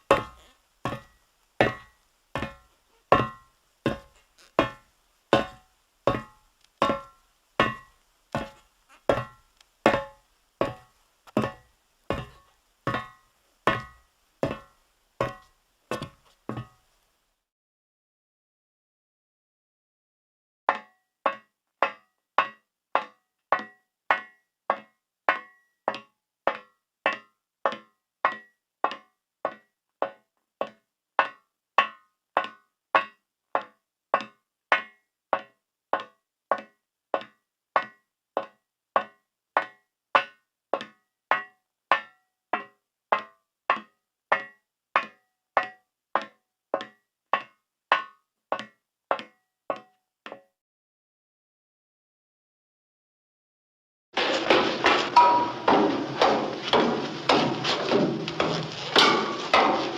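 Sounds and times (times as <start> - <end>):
footsteps on metal: 0.1 - 16.8, 54.2 - 59.9.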